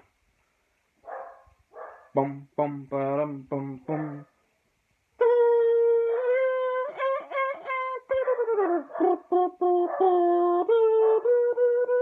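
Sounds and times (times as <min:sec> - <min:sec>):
person humming horn-like tune: 0:05.2 - 0:12.0.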